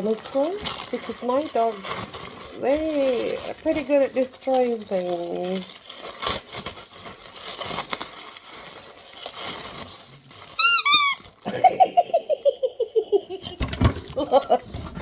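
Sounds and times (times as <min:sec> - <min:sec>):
squeaky dog toy squeaking: 0:10.6 - 0:11.4
soft knocks and thumps: 0:13.4 - 0:15.0.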